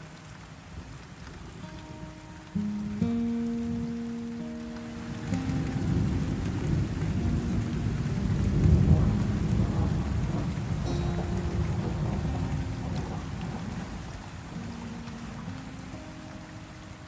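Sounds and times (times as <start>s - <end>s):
rain: 0.0s - 17.0s
held musical tones: 1.7s - 17.0s
rolling thunder: 5.8s - 14.6s.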